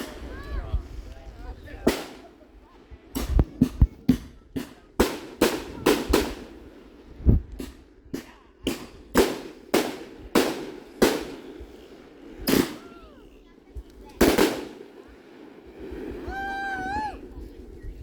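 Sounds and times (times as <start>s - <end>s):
fireworks shell bursts: 13.8s - 15.8s.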